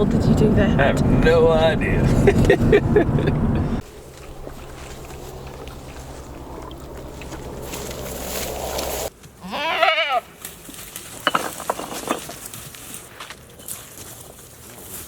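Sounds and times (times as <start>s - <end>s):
steady low hum: 0.0s - 9.1s
goat bleating: 9.4s - 10.3s.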